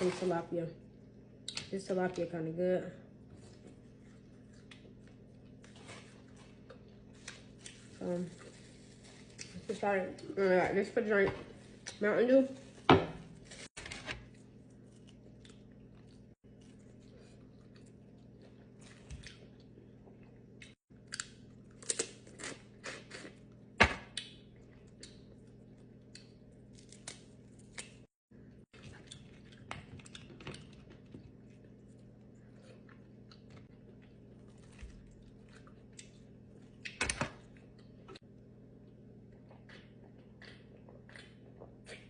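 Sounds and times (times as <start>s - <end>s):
chewing and crunching: 3.4s - 9.8s, 13.6s - 28.1s, 28.7s - 38.2s, 39.2s - 42.0s.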